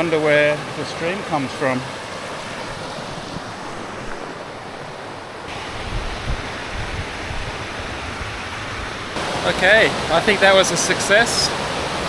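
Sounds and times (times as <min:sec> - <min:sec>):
stream and waterfall rushing: 0:00.0 - 0:12.0
wind buffeting microphone: 0:02.3 - 0:09.1.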